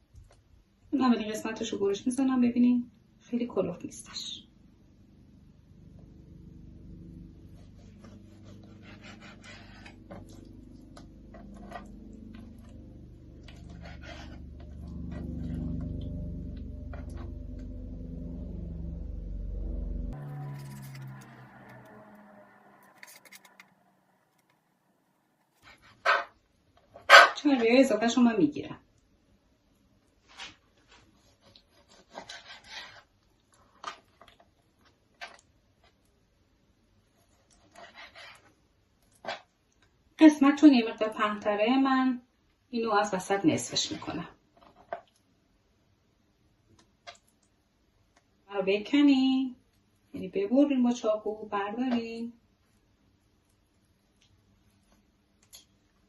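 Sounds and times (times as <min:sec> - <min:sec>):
knife scraping cutting board: 0:07.5 - 0:10.5, 0:13.5 - 0:15.3, 0:22.9 - 0:23.7, 0:25.6 - 0:26.4, 0:30.3 - 0:33.1, 0:37.4 - 0:38.5
knife cutting strokes: 0:07.6 - 0:10.4.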